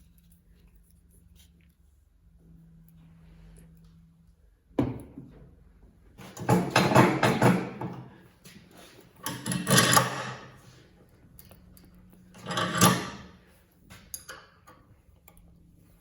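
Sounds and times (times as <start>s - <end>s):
hard parts rattling and scraping: 6.2s - 8.1s, 9.1s - 10.8s, 11.6s - 13.4s.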